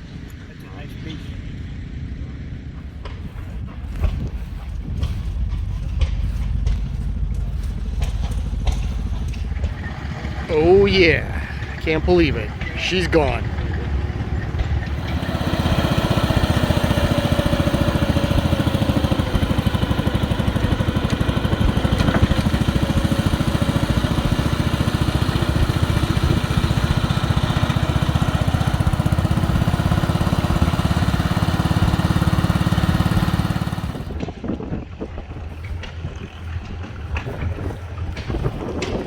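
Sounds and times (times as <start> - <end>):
small gasoline engine running: 3.9 - 34.3.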